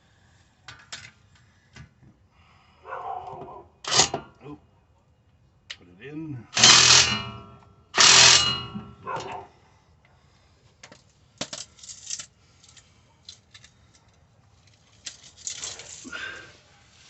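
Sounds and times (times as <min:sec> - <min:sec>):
metallic clinks of bolt and tools: 0:03.8 - 0:04.4, 0:06.6 - 0:09.4, 0:10.9 - 0:16.1.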